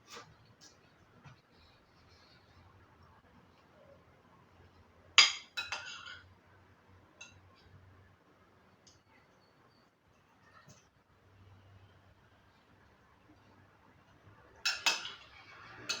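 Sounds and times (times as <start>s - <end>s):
tableware clinking: 5.2s - 6.2s, 14.6s - 16.0s.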